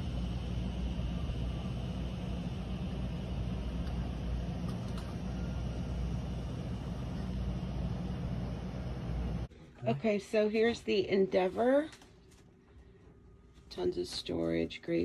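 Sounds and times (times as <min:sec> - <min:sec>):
low rumbling noise: 0:00.0 - 0:09.5.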